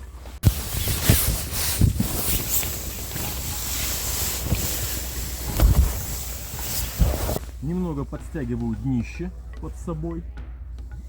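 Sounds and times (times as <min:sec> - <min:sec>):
fabric rustling and crackling: 0:00.0 - 0:07.5
wind buffeting microphone: 0:00.4 - 0:07.4
low thumps: 0:00.4 - 0:07.6.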